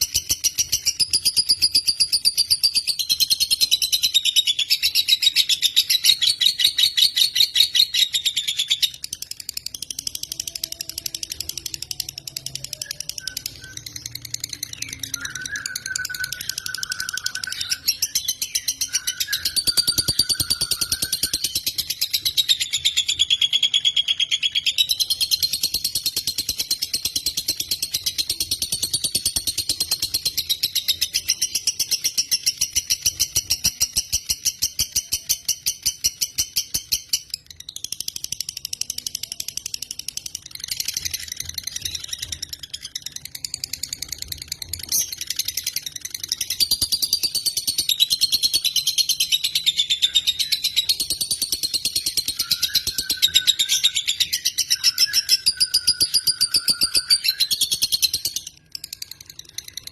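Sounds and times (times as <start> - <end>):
bird chattering trill: 0.0 - 37.4.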